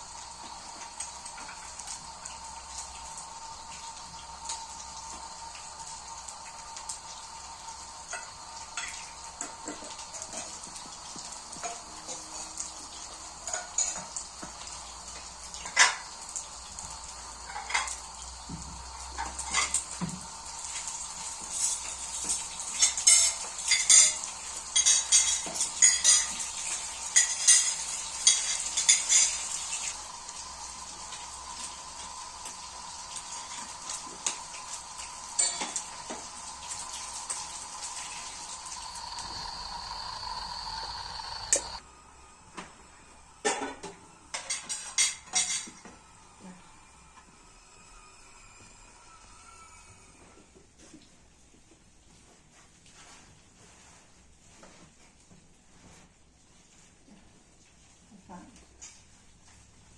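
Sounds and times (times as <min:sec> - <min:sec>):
food frying in oil: 0:00.0 - 0:59.9
metal utensils clinking on dishes: 0:13.4 - 0:14.6, 0:21.6 - 0:30.0, 0:35.3 - 0:35.8, 0:44.3 - 0:45.8.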